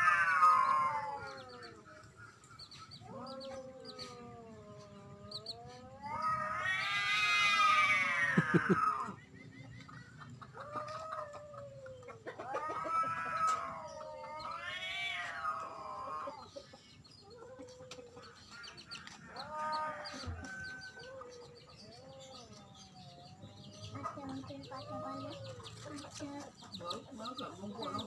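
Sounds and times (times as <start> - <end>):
cat yowling: 0.0 - 1.8, 3.0 - 9.2, 10.7 - 16.5.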